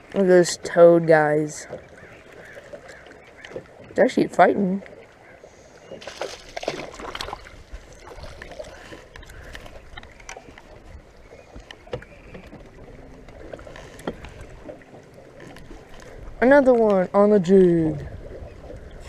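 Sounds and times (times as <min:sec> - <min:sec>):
knocks aboard boat: 0:11.4 - 0:14.8.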